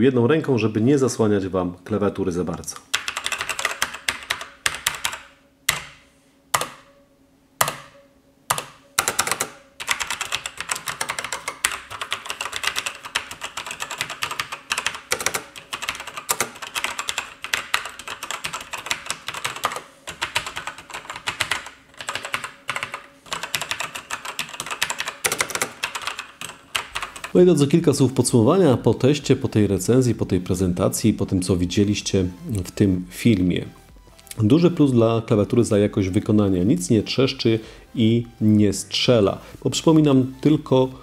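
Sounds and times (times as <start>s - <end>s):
mechanical keyboard typing: 2.7s - 6.0s, 7.6s - 27.4s.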